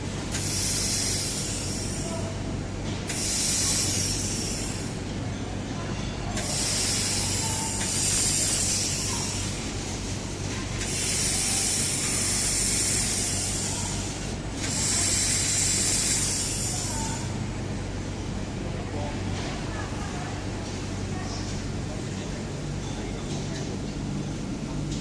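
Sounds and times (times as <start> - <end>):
laser welding hiss: 0.3 - 2.2, 3.1 - 5.0, 6.4 - 9.6, 10.8 - 17.3.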